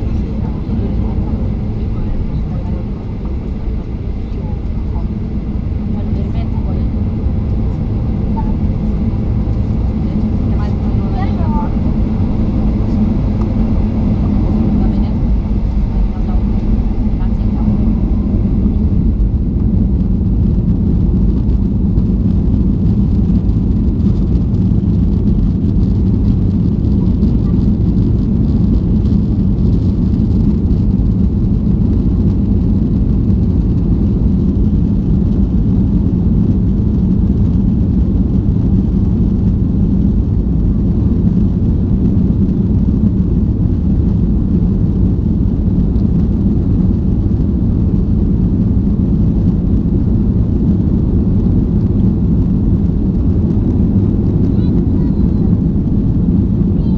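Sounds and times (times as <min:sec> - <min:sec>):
jet engines rumbling in cabin: 0:00.0 - 0:56.9.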